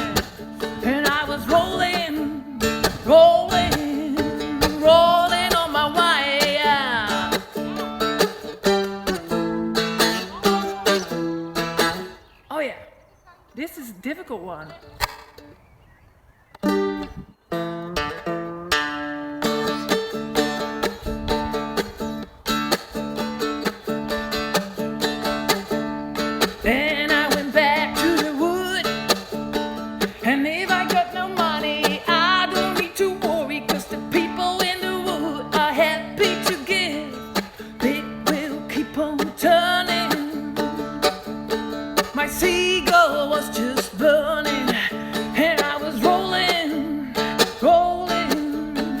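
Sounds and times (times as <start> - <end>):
person singing: 0.0 - 8.1, 9.9 - 11.2, 26.4 - 29.3, 30.0 - 49.0
acoustic guitar strumming: 0.0 - 12.3, 16.6 - 49.0.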